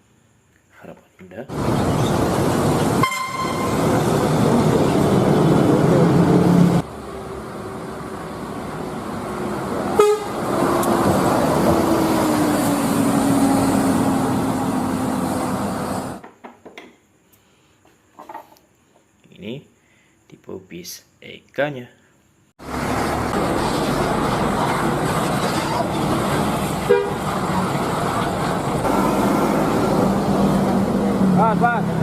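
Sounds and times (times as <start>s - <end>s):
road vehicle noise: 1.5s - 16.2s, 22.6s - 32.0s
car horn toot: 3.0s - 3.9s, 9.9s - 10.4s, 26.9s - 27.2s.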